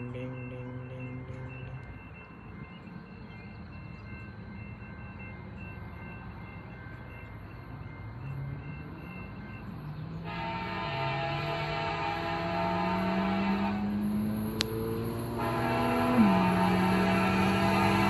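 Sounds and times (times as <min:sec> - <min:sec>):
railroad crossing bell dinging: 0:00.0 - 0:18.0
locomotive air horn: 0:10.2 - 0:18.0.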